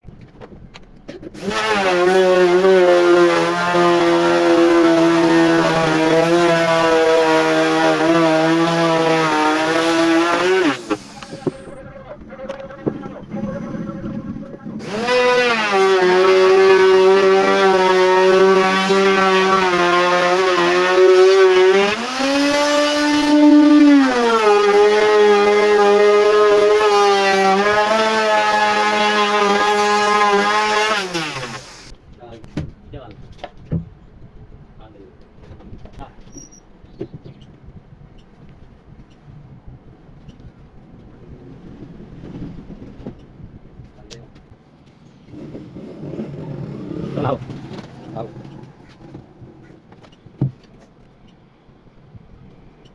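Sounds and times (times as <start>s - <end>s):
power tool motor running: 1.4s - 11.8s, 14.8s - 31.9s.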